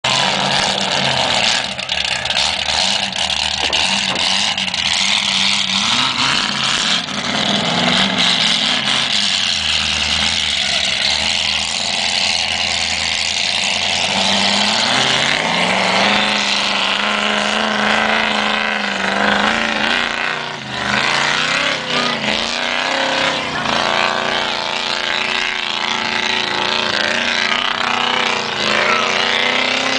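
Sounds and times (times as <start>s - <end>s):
engine revving under load: 0.0s - 29.9s.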